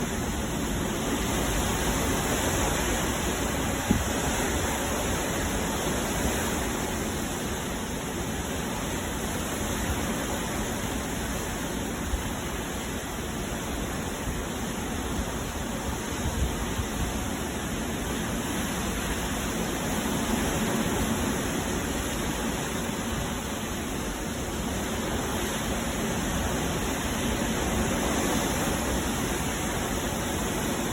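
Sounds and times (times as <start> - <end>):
storm wind and rain: 0.0 - 30.9.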